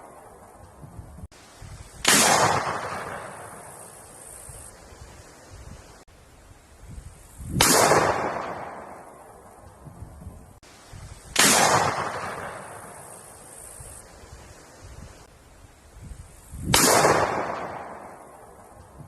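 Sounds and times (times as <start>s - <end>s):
gunshots with echo: 2.0s - 3.7s, 7.6s - 9.1s, 11.4s - 13.0s, 16.7s - 18.3s.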